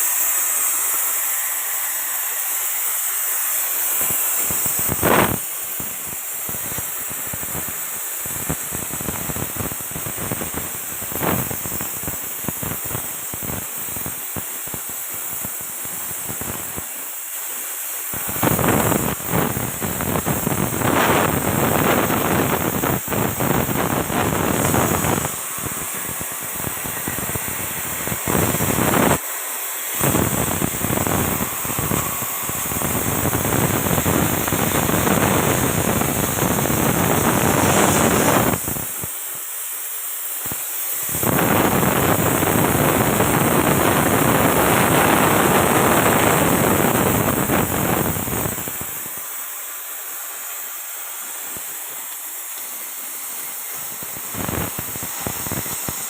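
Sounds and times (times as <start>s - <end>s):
arc welding crackling hiss: 0.0s - 56.0s.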